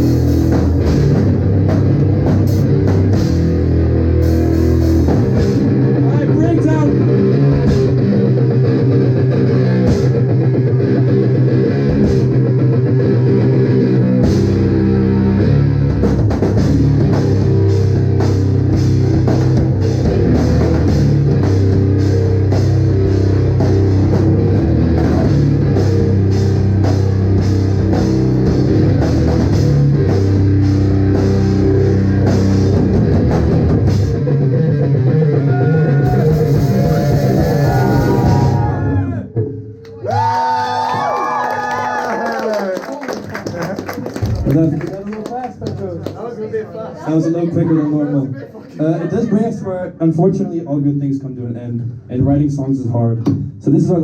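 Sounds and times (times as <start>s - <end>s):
electric guitar: 0.0s - 39.1s
drum kit: 0.0s - 45.3s.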